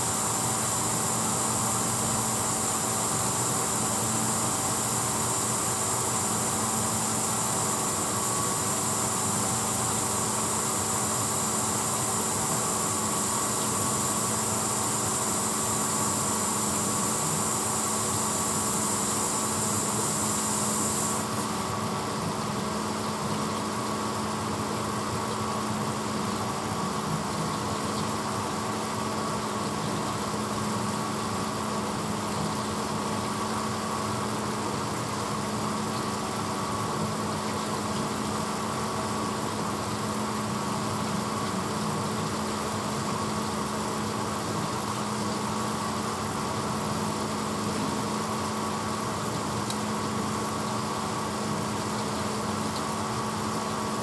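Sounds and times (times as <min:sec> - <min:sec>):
high hiss: 0:00.0 - 0:21.5
dishwasher motor hum: 0:00.0 - 0:54.0.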